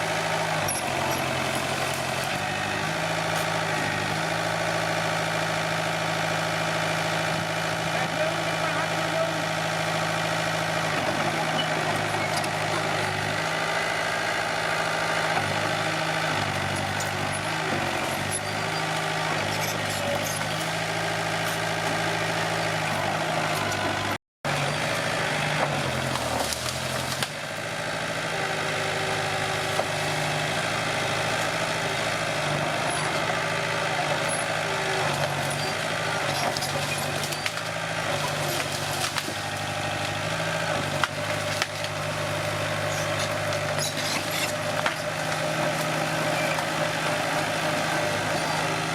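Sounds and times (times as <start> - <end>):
bulldozer diesel engine: 0.0 - 48.9.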